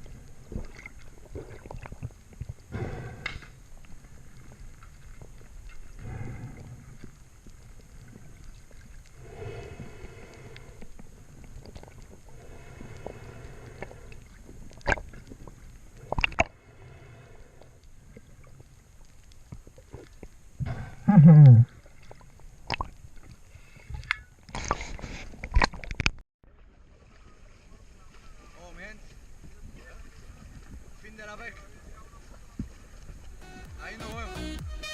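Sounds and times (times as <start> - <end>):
water sloshing and gurgling: 0.0 - 26.1
short sound falling in pitch: 33.4 - 34.9.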